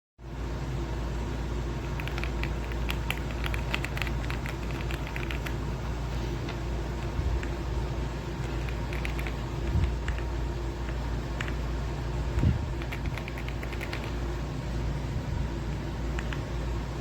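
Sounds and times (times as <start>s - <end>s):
steady low hum: 0.2s - 17.0s
mechanical keyboard typing: 1.8s - 5.6s, 8.4s - 10.3s, 11.4s - 11.6s, 12.8s - 14.2s.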